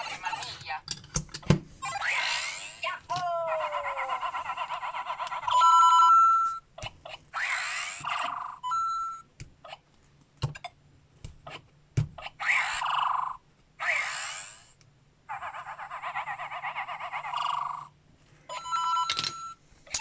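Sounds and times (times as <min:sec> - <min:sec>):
toy speaker beeping jingle: 0:05.5 - 0:06.6, 0:08.6 - 0:09.2, 0:18.5 - 0:19.6.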